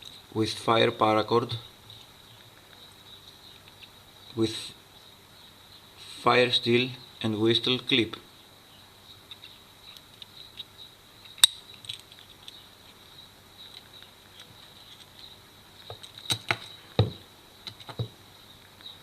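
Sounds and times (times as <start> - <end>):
clicks and knocks of small objects: 11.3 - 13.0, 15.8 - 18.2.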